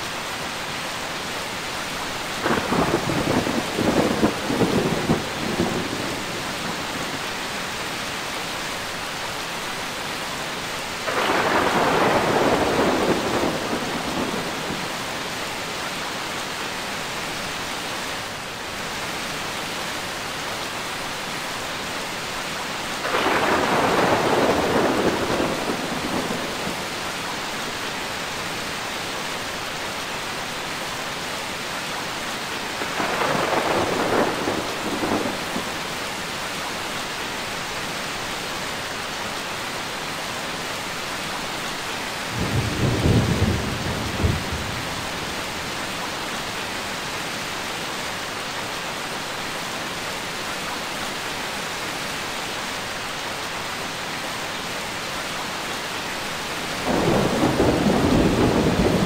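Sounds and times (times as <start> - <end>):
heavy rain hissing: 0.0 - 59.0
thunder rumbling: 2.4 - 7.2, 11.0 - 15.2, 23.0 - 27.0, 32.8 - 35.8, 42.3 - 45.6, 56.8 - 59.0.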